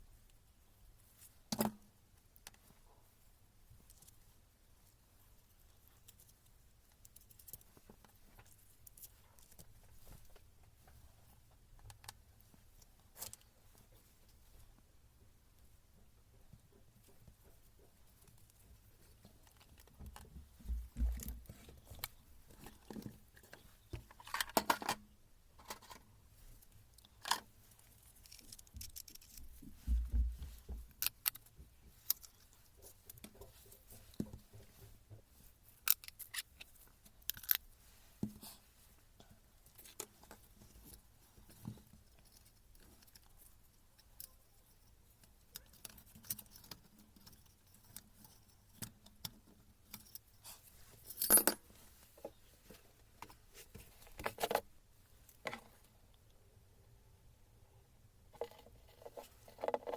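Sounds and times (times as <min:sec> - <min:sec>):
dull knocks: 0:29.8 - 0:30.9.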